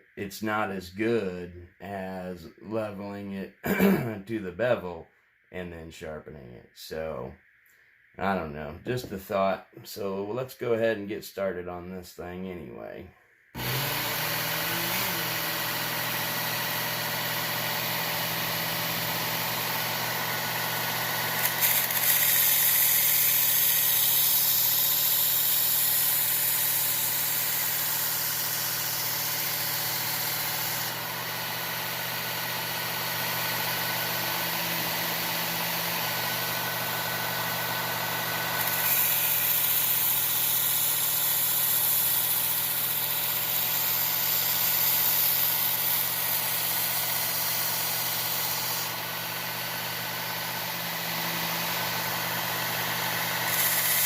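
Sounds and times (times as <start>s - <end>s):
belt sander motor hum: 13.6s - 54.0s.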